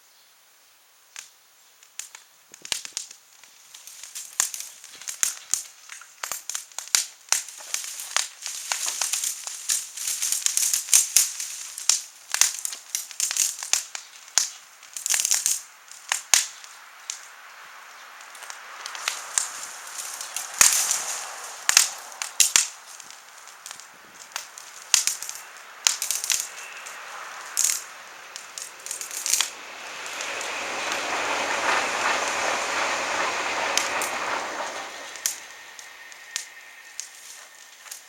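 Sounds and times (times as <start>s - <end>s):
grass and twigs crackling: 1.1s - 38.0s
sharp pops: 1.8s - 38.0s
steady rushing noise: 15.7s - 38.0s.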